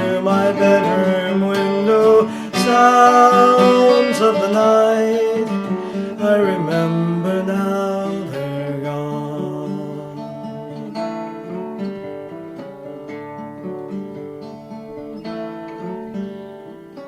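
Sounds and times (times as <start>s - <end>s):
acoustic guitar playing: 0.0s - 17.0s.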